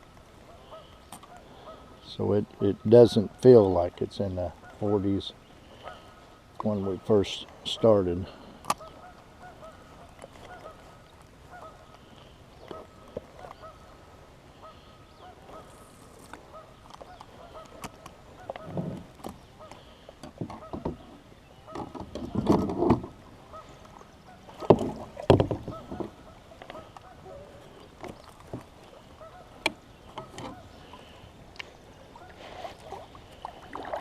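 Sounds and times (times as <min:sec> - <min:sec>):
geese honking: 0:00.5 - 0:02.0, 0:04.5 - 0:15.8, 0:16.4 - 0:18.8, 0:23.4 - 0:27.9, 0:28.8 - 0:31.3.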